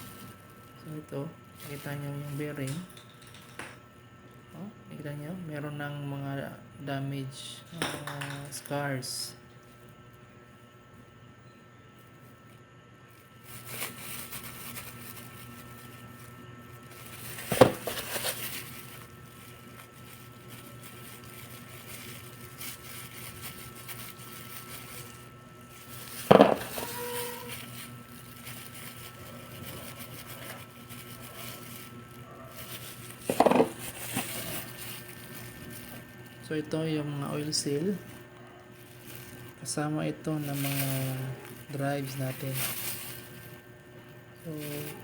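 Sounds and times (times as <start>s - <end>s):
motorcycle parts rustling and rubbing: 13.4s - 36.5s, 40.4s - 45.0s.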